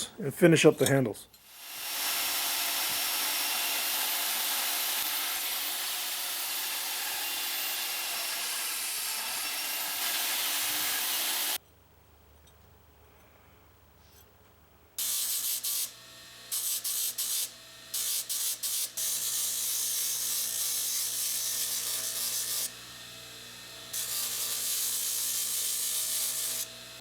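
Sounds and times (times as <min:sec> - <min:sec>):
power tool grinding steel: 0:01.4 - 0:11.6, 0:15.0 - 0:27.0.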